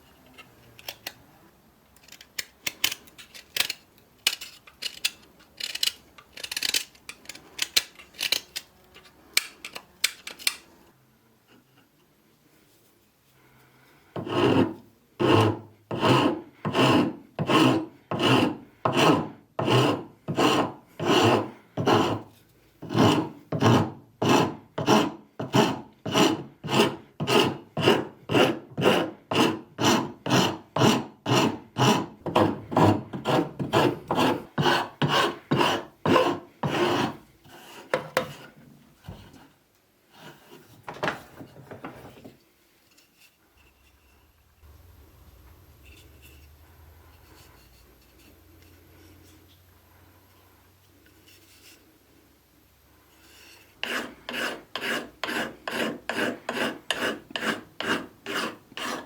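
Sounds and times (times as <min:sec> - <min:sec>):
hand file scraping: 0:03.6 - 0:10.6, 0:14.1 - 0:38.6, 0:40.1 - 0:40.8, 0:53.1 - 0:59.0.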